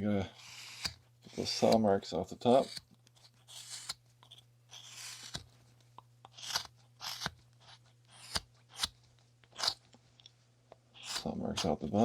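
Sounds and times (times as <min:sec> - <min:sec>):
blade shaving wood: 0:00.3 - 0:04.0, 0:04.7 - 0:05.5, 0:06.3 - 0:08.9, 0:11.0 - 0:11.8.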